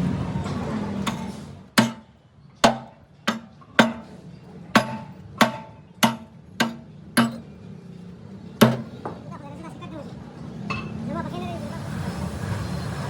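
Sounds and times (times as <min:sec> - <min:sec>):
hammer striking steel: 0:01.0 - 0:07.6, 0:08.6 - 0:09.1.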